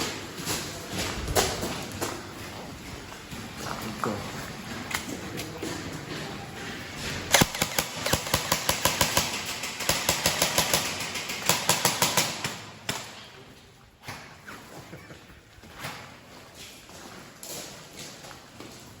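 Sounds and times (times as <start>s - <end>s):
airsoft guns firing: 7.1s - 13.4s.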